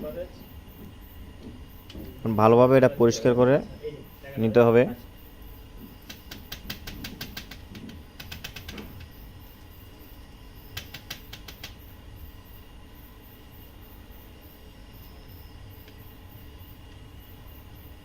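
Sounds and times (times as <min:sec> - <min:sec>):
clicks and taps on plastic: 0:06.0 - 0:09.2, 0:10.7 - 0:11.8.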